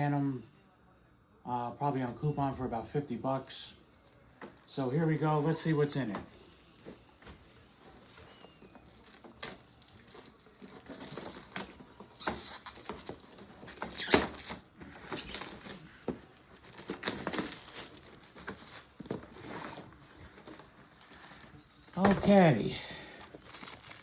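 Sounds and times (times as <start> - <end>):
packaging crinkling and tearing: 4.0 - 24.0.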